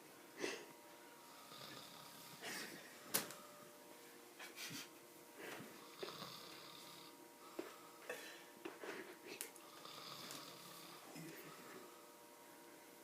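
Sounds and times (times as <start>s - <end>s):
wheezy snoring: 1.3s - 2.8s, 5.8s - 7.2s, 9.6s - 11.9s.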